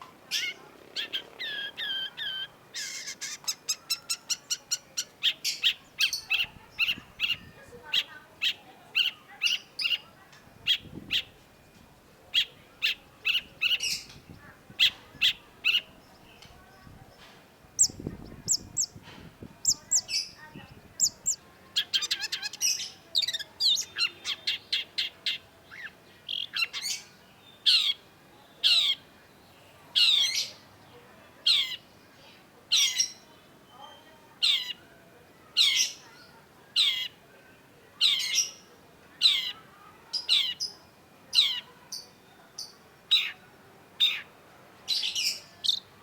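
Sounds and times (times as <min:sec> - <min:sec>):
bird singing high chirps: 0:00.3 - 0:30.6.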